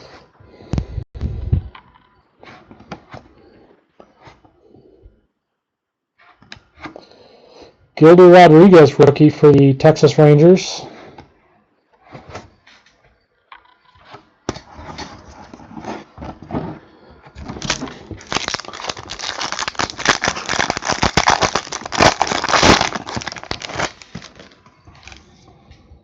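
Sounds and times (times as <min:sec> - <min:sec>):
wrapper crinkling and tearing: 0:17.5 - 0:25.2.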